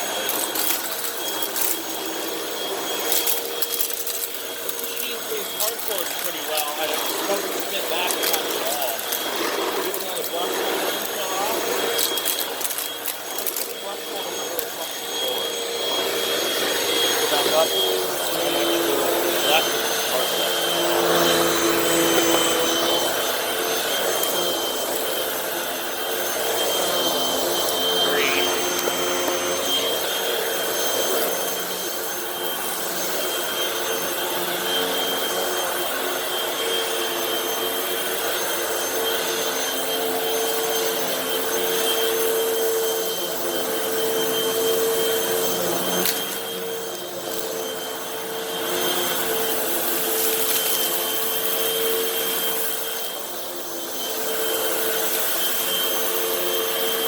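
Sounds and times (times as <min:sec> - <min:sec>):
vacuum cleaner running: 0:00.0 - 0:57.0.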